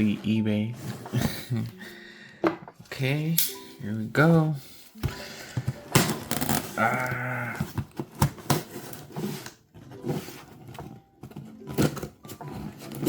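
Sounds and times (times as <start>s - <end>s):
packaging tearing and crinkling: 6.0s - 9.6s.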